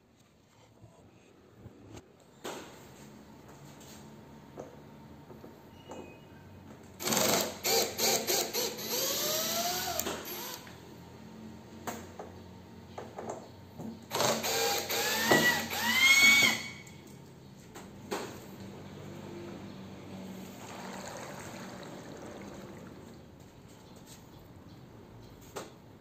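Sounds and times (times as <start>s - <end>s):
electric power drill running: 7.0s - 10.7s, 14.1s - 16.9s.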